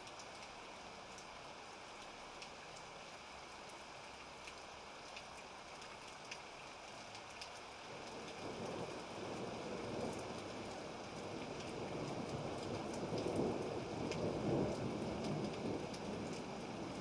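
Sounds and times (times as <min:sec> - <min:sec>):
steady rain: 0:00.0 - 0:17.0
raindrops ticking: 0:04.4 - 0:17.0.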